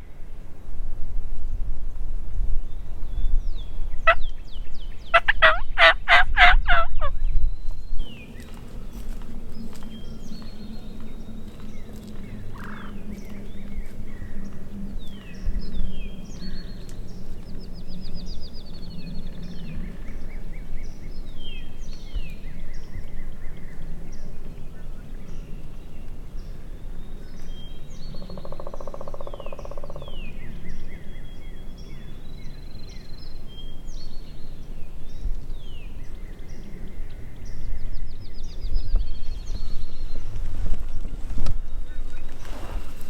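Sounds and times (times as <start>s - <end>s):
songbirds chirping: 0.0s - 43.0s
wind rumble on microphone: 0.0s - 43.0s
turkey gobbling: 5.1s - 7.1s.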